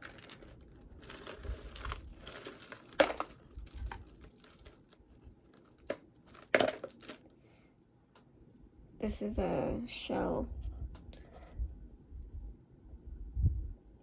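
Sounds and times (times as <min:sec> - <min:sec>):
jewelry rustling and crinkling: 0:00.0 - 0:07.2.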